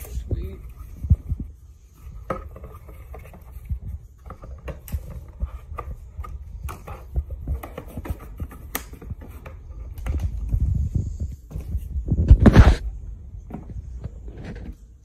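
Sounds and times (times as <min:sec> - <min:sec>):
clicks taps and scrapes of parts: 0:00.0 - 0:10.6
loud thumps: 0:11.6 - 0:12.9.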